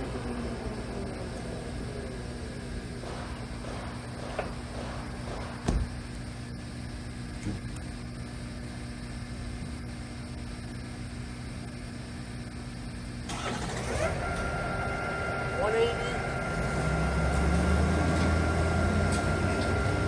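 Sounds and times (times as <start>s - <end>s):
lathe running with geared hum: 0.0s - 8.2s, 13.2s - 20.0s.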